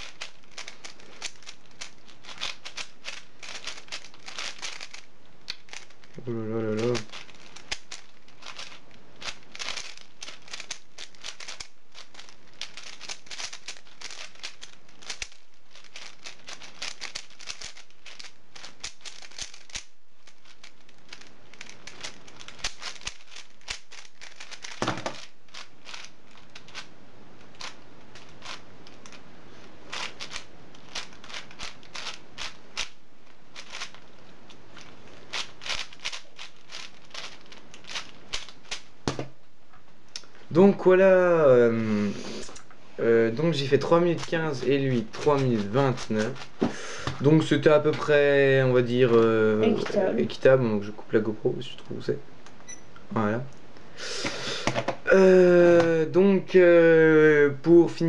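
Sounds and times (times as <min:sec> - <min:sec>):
puzzle cube clicking: 0:00.0 - 0:29.2, 0:29.9 - 0:34.1, 0:34.8 - 0:38.9.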